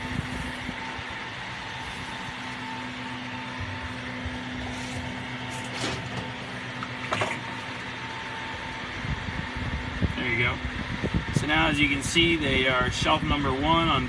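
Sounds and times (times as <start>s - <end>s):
cooling fans whirring: 0.0s - 14.0s
electrical hum: 0.0s - 14.0s.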